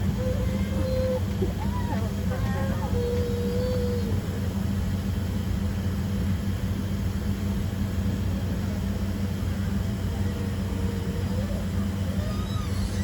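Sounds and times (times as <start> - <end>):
airliner cabin drone: 0.0 - 13.0.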